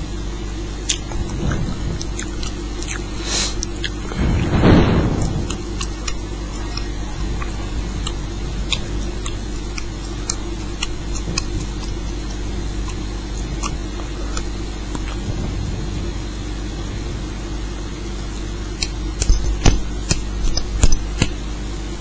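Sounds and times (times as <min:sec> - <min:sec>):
low background hum: 0:00.0 - 0:22.0
small sharp clicks: 0:18.8 - 0:21.4.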